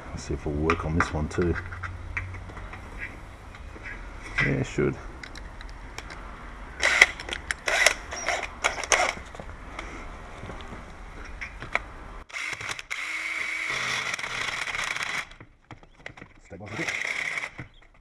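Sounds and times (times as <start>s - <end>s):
handling clicks and knocks: 0.6s - 4.6s, 5.2s - 6.2s, 7.0s - 9.9s, 15.3s - 16.8s
power drill boring metal: 6.8s - 9.2s, 12.3s - 15.3s, 16.7s - 17.6s.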